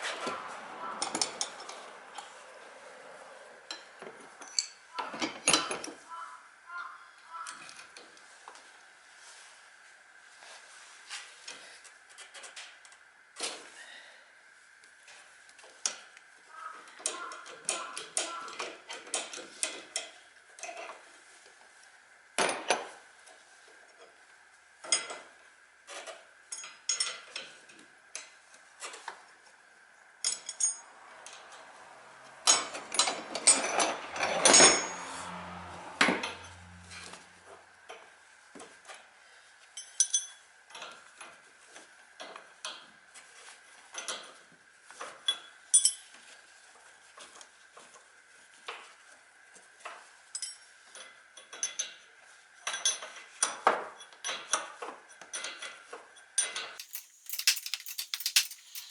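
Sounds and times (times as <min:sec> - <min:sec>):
metal hand tools clinking: 0:56.8 - 0:58.9.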